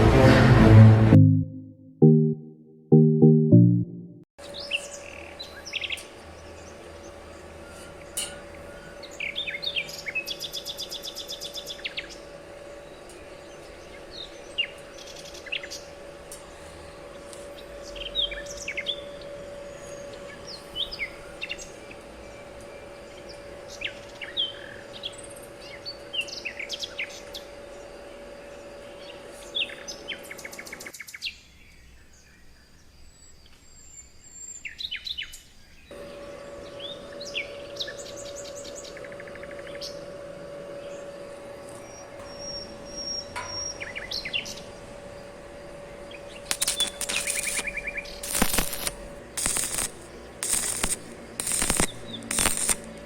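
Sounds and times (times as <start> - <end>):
steady low hum: 35.9 - 53.0.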